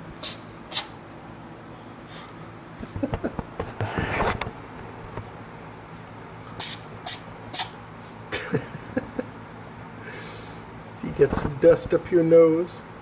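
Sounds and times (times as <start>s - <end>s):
cat sneezing: 0.2s - 1.0s, 6.5s - 7.8s.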